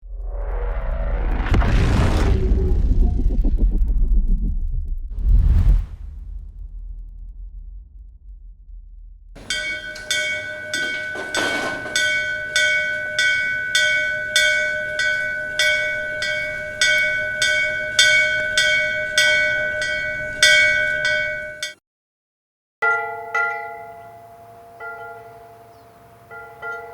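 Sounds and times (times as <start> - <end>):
low rumble: 0.0 - 9.4
metal bell struck: 9.4 - 21.8, 22.8 - 26.9.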